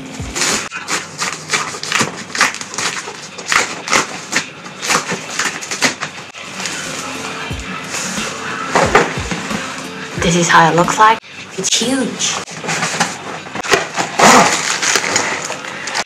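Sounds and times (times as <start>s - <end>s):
packaging rustling and crackling: 0.3s - 7.1s, 12.4s - 16.0s.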